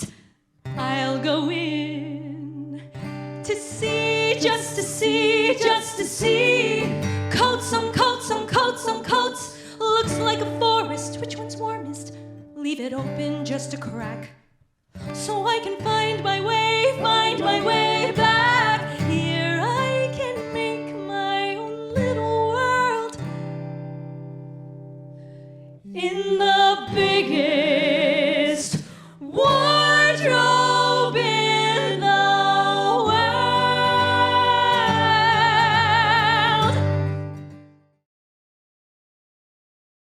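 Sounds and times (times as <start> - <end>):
guitar accompaniment: 0.0 - 38.0
person singing: 3.5 - 12.0, 15.4 - 23.2, 25.9 - 36.9.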